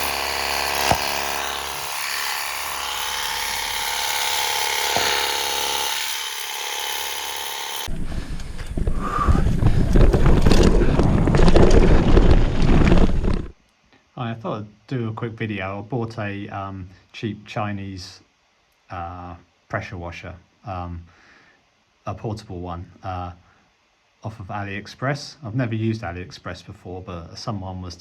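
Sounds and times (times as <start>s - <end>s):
pressure washer pump whine: 0.0s - 8.8s.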